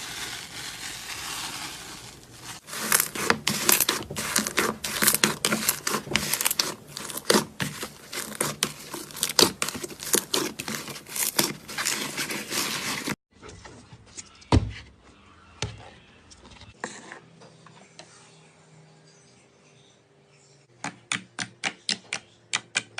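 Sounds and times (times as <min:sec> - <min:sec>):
soft slime squishes: 0:01.0 - 0:13.2.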